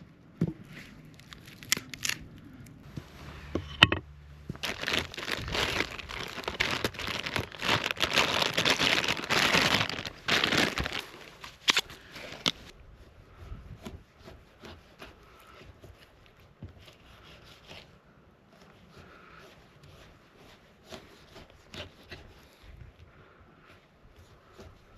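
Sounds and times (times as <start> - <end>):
dry material crinkling and crackling: 4.5 - 12.7.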